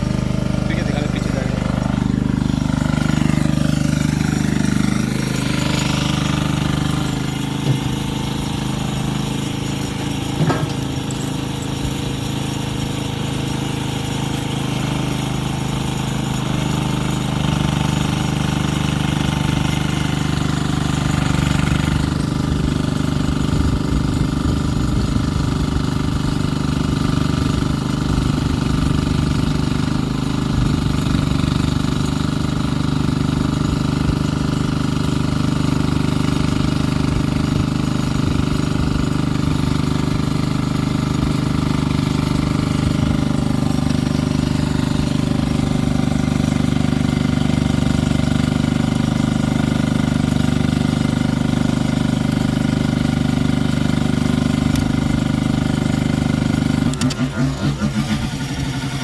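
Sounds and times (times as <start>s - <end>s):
engine droning: 0.0s - 59.0s
short knocks: 10.0s - 11.2s.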